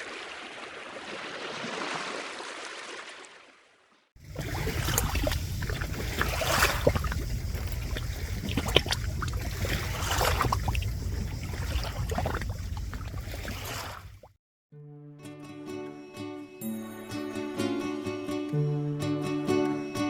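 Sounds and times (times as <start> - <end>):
sea water splashing: 0.0 - 14.4
wind on microphone: 4.2 - 14.3.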